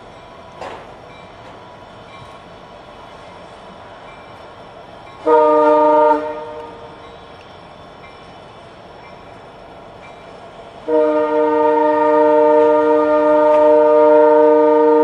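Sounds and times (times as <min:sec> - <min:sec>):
locomotive air horn blasts: 0:05.2 - 0:06.9, 0:10.8 - 0:15.0.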